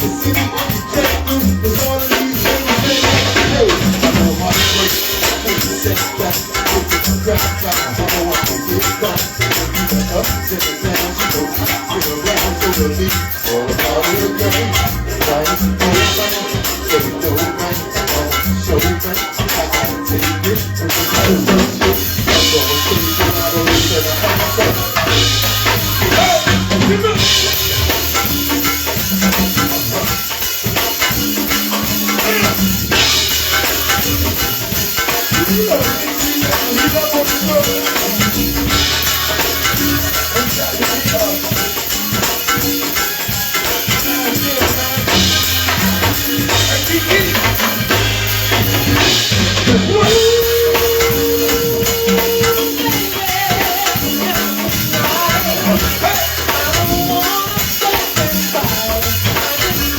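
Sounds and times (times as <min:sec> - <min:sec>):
held melodic note: 0:00.0 - 0:57.9
bass: 0:00.0 - 0:59.9
drum kit: 0:00.0 - 0:59.9
shaker-like percussion: 0:00.0 - 0:59.9.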